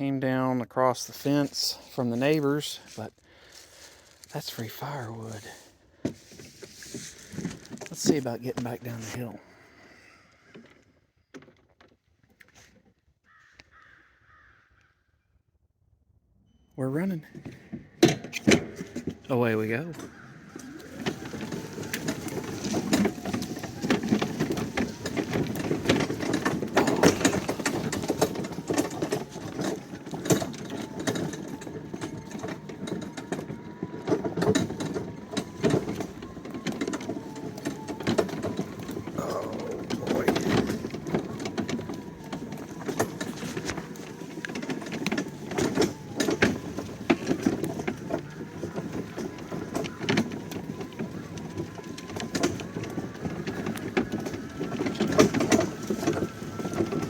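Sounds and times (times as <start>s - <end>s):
mower rattling and knocking: 0.9s - 9.7s, 16.8s - 57.0s
electric motor whining: 20.0s - 57.0s.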